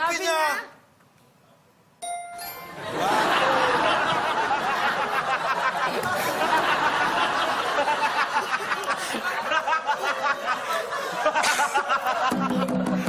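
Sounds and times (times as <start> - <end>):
audience laughing and chattering: 2.6 - 13.0.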